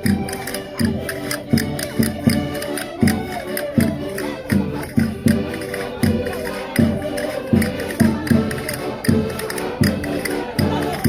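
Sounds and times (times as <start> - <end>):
concertinas playing folk tune: 0.0 - 11.0
steady low drum beat: 3.0 - 11.0.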